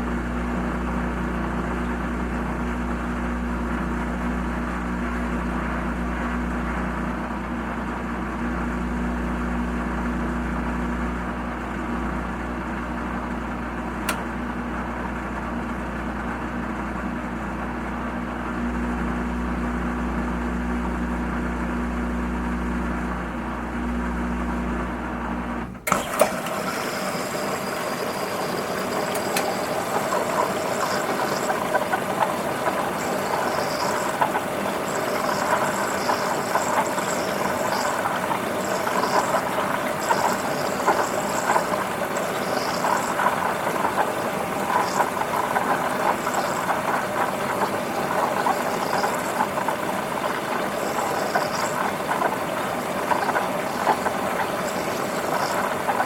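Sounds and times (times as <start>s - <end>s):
washing machine motor hum: 0.0s - 56.0s
washing machine click: 25.7s - 47.4s.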